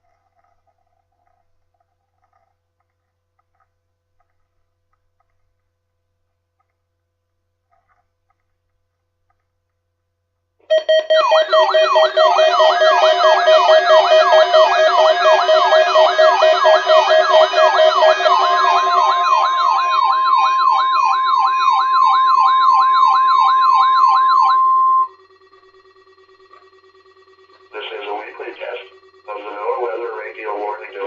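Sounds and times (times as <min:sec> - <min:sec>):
electronic sirens sweeping: 0:10.7 - 0:31.0
steady beeping tones: 0:10.7 - 0:31.0.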